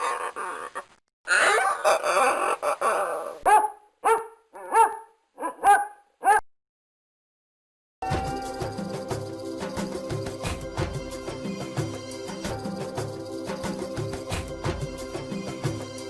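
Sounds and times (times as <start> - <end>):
dog whining and grumbling: 0.0 - 3.5
dog barking: 1.3 - 2.7, 3.4 - 6.5.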